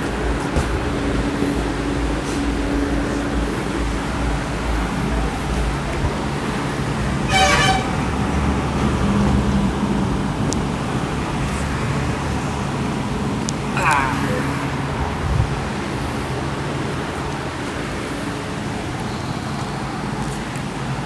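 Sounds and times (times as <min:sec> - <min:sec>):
road traffic: 0:00.0 - 0:21.0
vehicle horn toot: 0:07.2 - 0:08.2.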